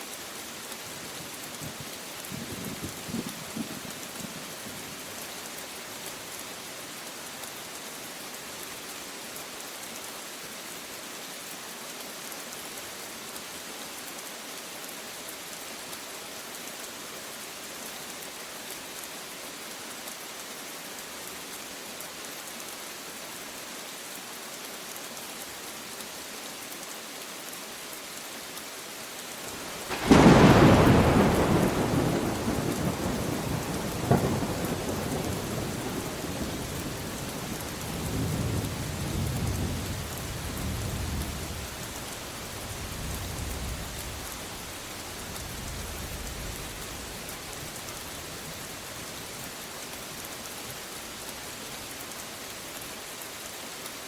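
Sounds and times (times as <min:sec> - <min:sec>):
steady rain falling: 0:00.0 - 0:54.0
thunder clap rumbling: 0:29.8 - 0:36.2.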